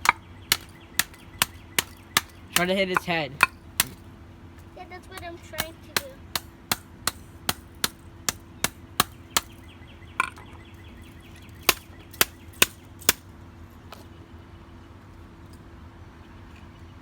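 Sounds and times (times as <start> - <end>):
hammer striking plastic: 0.0 - 4.0, 5.2 - 9.6.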